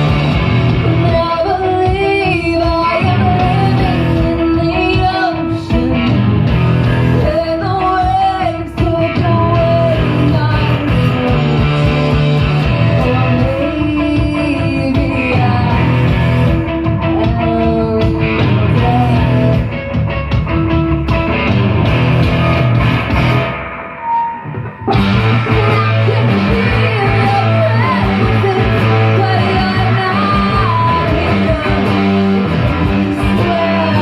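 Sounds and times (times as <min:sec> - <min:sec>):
person singing: 0:00.0 - 0:19.9, 0:24.9 - 0:34.0
bass guitar: 0:00.0 - 0:34.0
drums: 0:00.0 - 0:34.0
electric guitar: 0:00.0 - 0:34.0.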